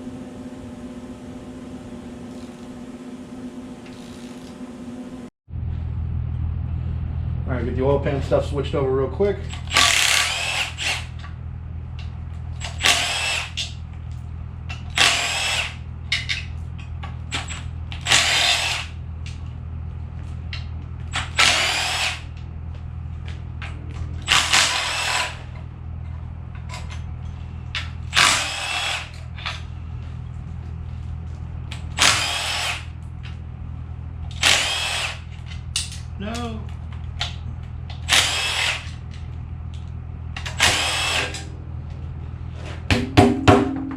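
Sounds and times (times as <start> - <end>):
steady low hum: 0.0 - 43.9
power drill running in bursts: 9.5 - 11.2, 12.6 - 13.7, 14.9 - 15.8, 17.3 - 19.0, 21.1 - 22.4, 24.2 - 25.6, 28.1 - 29.4, 31.9 - 33.0, 34.3 - 35.4, 37.9 - 39.0, 40.4 - 41.5.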